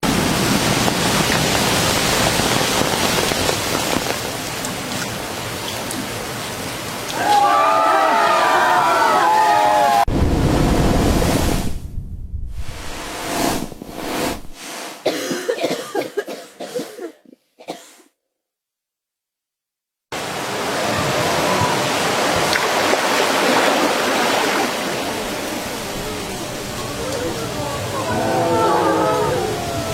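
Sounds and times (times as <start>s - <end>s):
heavy rain falling: 0.0s - 11.8s, 20.2s - 29.9s
loud rushing water: 0.0s - 11.8s, 20.2s - 29.9s
sharp drips and patters: 0.1s - 7.2s.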